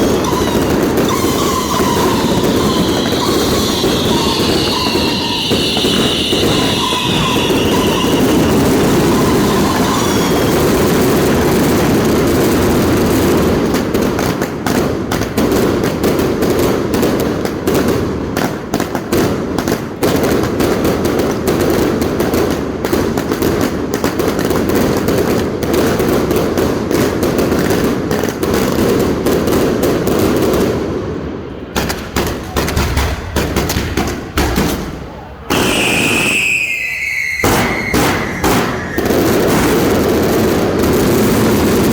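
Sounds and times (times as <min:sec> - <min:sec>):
fireworks crackling and banging: 0:00.0 - 0:41.9.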